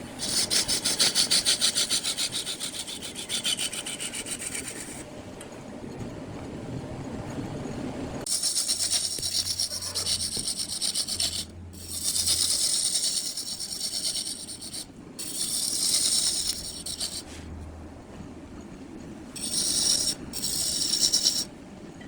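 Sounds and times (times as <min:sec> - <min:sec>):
wood lathe turning rasp: 0:00.1 - 0:05.0, 0:08.3 - 0:17.3, 0:19.4 - 0:21.5.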